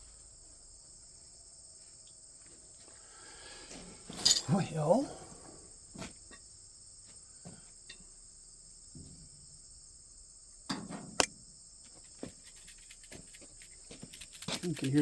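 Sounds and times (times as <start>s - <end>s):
crickets chirping: 0.0s - 15.0s
sharp metal clinks: 4.1s - 4.8s, 12.1s - 15.0s.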